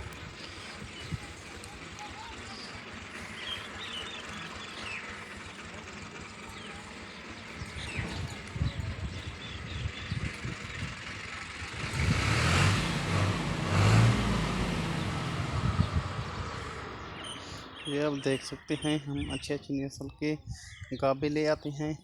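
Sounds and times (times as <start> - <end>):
vehicle engine passing close: 0.0 - 18.8
faint bird chirps: 15.8 - 22.0.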